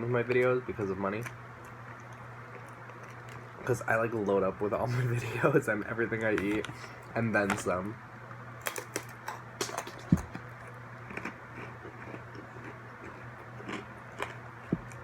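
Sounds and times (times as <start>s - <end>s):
faint low hum: 0.0s - 15.0s
pretzels being chewed: 1.2s - 3.8s, 8.6s - 15.0s.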